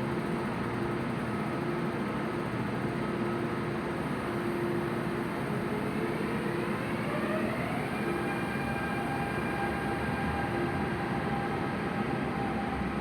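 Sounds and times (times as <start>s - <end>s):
electric train motor whine: 4.8s - 13.0s.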